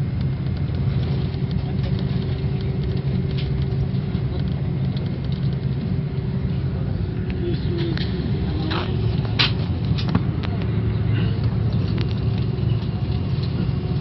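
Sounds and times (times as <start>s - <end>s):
aeroplane engine rumble: 0.0s - 14.0s.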